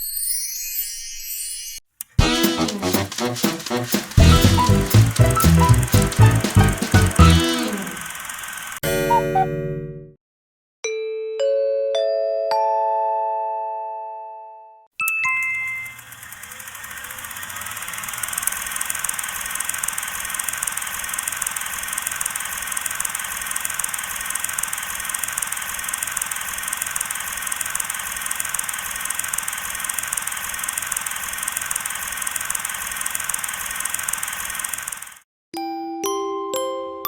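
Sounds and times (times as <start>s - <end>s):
fluttering motor whir: 3.7s - 8.8s, 15.9s - 35.2s.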